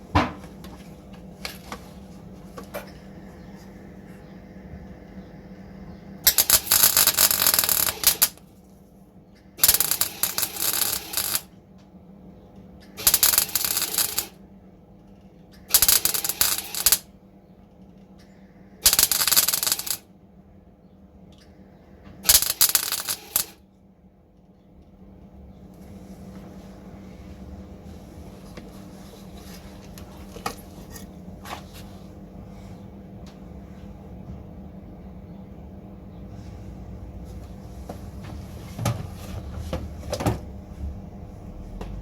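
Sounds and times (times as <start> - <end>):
welding bursts: 6.2 - 8.4, 9.6 - 11.5, 13.0 - 14.4, 15.7 - 17.1, 18.8 - 20.0, 22.2 - 23.6.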